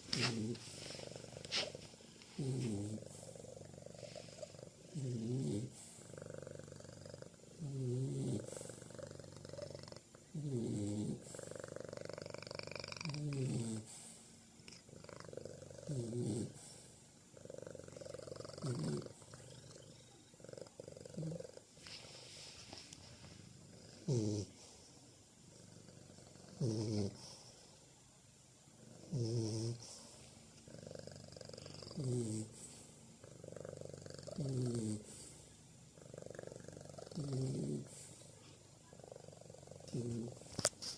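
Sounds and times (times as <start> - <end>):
cat purring: 0.0 - 27.8, 28.7 - 40.9
bulldog snoring: 2.4 - 21.7, 23.7 - 24.6, 25.5 - 27.5, 28.9 - 30.1, 30.7 - 35.4, 36.0 - 38.2, 39.0 - 40.5.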